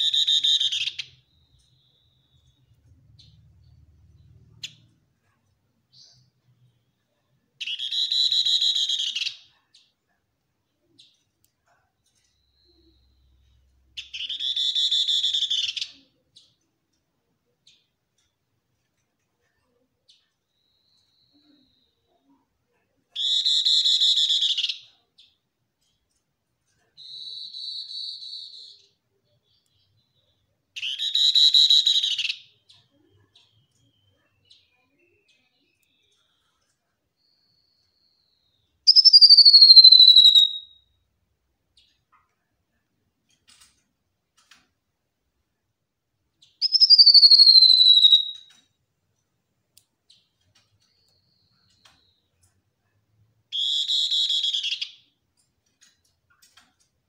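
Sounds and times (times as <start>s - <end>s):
bird chirping and trilling: 0.0s - 4.9s, 7.6s - 9.9s, 12.6s - 16.5s, 23.2s - 25.4s, 27.0s - 36.4s, 37.2s - 41.0s, 46.4s - 48.6s, 53.5s - 55.2s
bird trilling: 38.9s - 40.8s, 46.6s - 48.5s.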